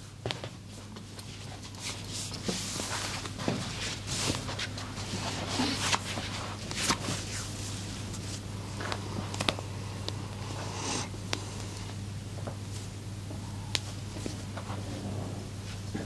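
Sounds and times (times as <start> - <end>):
steady low hum: 0.0 - 16.0
soft rustling and brushing: 0.3 - 9.6.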